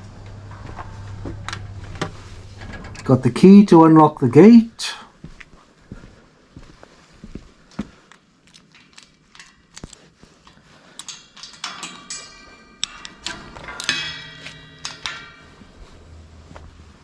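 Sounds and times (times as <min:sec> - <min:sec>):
gate knocking: 0:00.5 - 0:04.0, 0:11.0 - 0:15.8
gate hinges squealing: 0:02.3 - 0:04.1
key unlocking gate: 0:02.5 - 0:04.6, 0:08.5 - 0:15.6.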